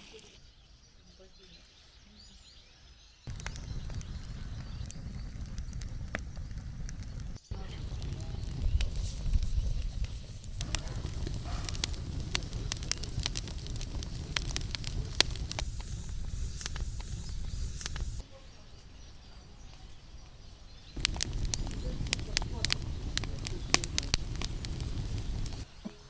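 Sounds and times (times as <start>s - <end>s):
campfire crackling and popping: 3.3s - 18.2s, 19.8s - 26.0s
low rumble: 3.3s - 18.2s, 21.0s - 25.6s
steady high hiss: 7.4s - 19.0s, 20.8s - 26.0s.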